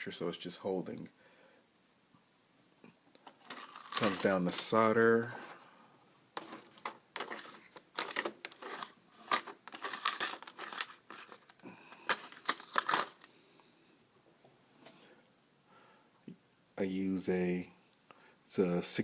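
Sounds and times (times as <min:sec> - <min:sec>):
crinkling handling noise: 0:02.8 - 0:13.7.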